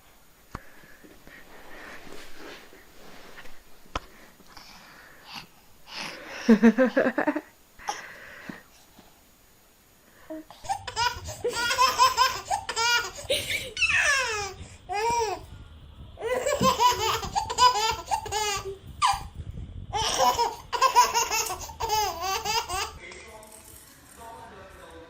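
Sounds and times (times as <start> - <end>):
baby squealing: 10.6 - 15.0
baby laughing: 10.6 - 15.4, 16.2 - 19.3, 20.0 - 23.0.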